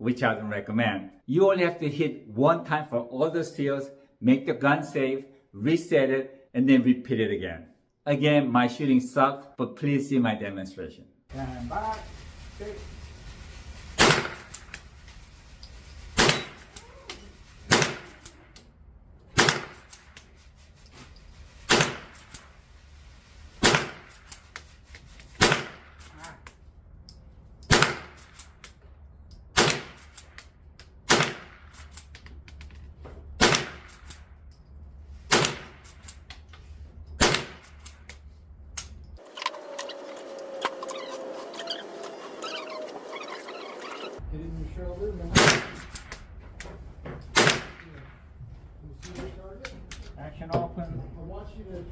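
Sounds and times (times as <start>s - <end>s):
rifle shots at steel targets: 14.0s - 14.7s, 16.1s - 16.7s, 17.7s - 18.4s, 19.3s - 19.9s, 21.7s - 22.4s, 23.6s - 24.2s, 25.4s - 26.0s, 27.7s - 28.4s, 35.3s - 35.9s, 37.2s - 37.8s, 47.3s - 47.9s.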